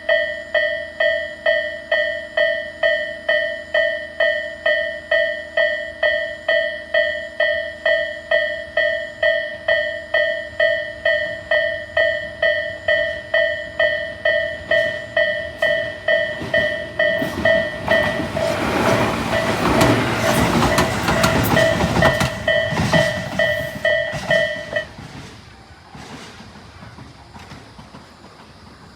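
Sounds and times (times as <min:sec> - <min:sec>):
level-crossing warning bell: 0:00.0 - 0:25.3
train wheels clattering on rails: 0:12.0 - 0:28.9.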